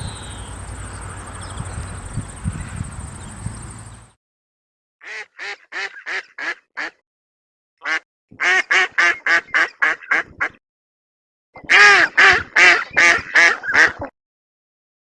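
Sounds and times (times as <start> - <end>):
high insect buzz: 0.0 - 4.1
duck quacking: 5.0 - 7.0, 7.8 - 10.6, 11.6 - 14.1.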